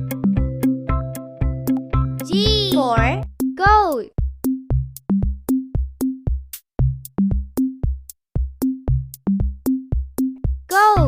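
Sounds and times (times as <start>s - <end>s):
low bass notes: 0.0s - 3.8s.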